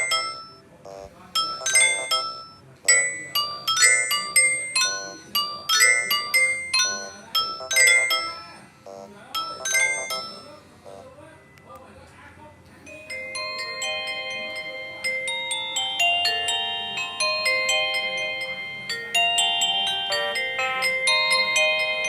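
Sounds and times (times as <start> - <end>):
bell-like ringtone melody: 0.0 - 11.7, 12.9 - 22.0
ringtone with held stepping notes: 0.0 - 11.9, 12.9 - 22.0.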